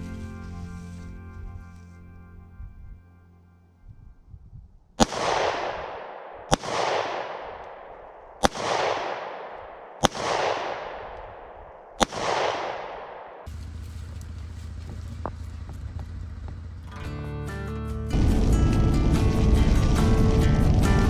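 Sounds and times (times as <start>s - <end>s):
gunshots with echo: 5.0s - 13.5s.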